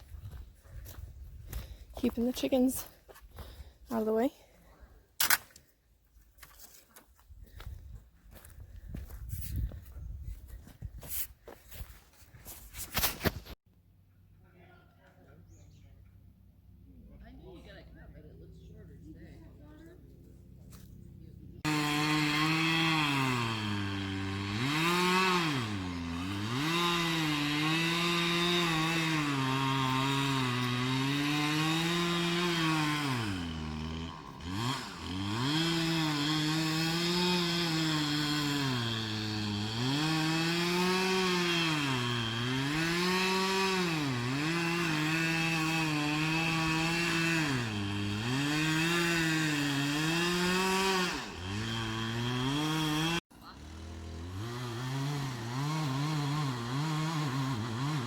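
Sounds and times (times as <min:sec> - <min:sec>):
chainsaw cutting wood: 0:21.6 - 0:58.0.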